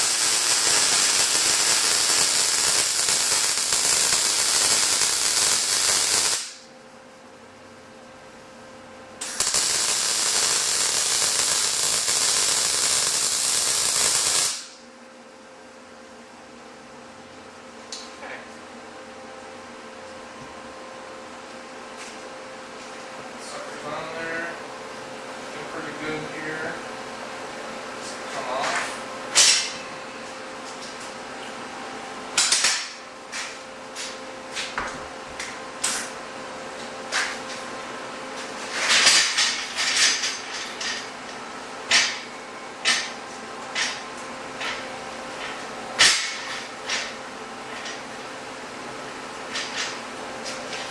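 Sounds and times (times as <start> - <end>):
arc welder hissing: 0.0 - 6.7, 9.2 - 14.8.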